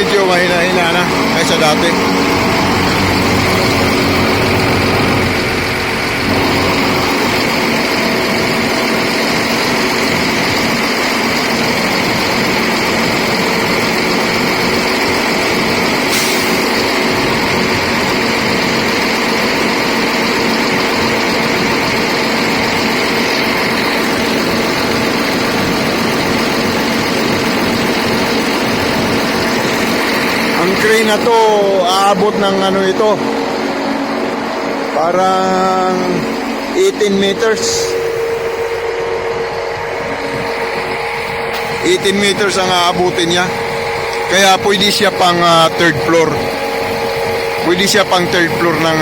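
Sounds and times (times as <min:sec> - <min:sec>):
crane machine noise: 0:00.0 - 0:49.0
hydraulic pump whine: 0:00.0 - 0:49.0.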